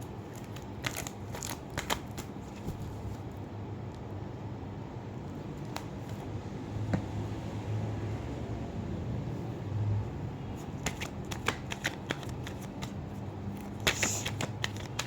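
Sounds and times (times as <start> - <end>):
cards being shuffled: 0.0 - 3.3, 10.6 - 15.0.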